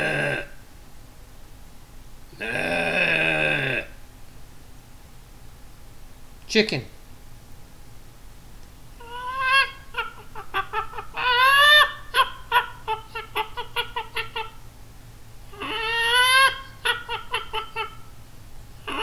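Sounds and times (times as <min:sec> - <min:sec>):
person imitating chicken clucks: 0:00.0 - 0:00.4, 0:09.0 - 0:14.6, 0:15.5 - 0:18.0
drawn-out squawk: 0:09.0 - 0:14.6, 0:15.5 - 0:18.2, 0:18.8 - 0:19.0.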